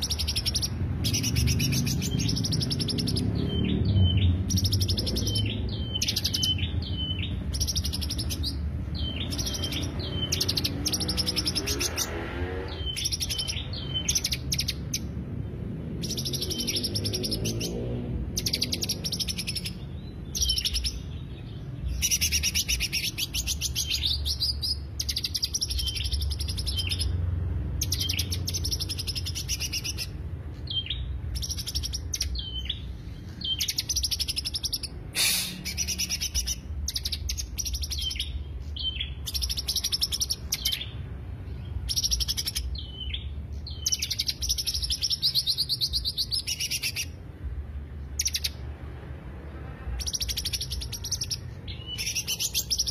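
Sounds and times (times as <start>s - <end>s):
bird chattering trills: 0.0s - 15.1s, 21.9s - 27.2s, 27.8s - 41.0s.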